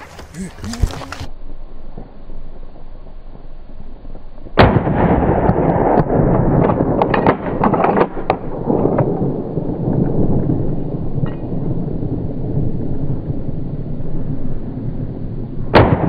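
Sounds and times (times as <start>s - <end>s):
gunshot: 4.6s - 8.1s, 15.8s - 16.0s.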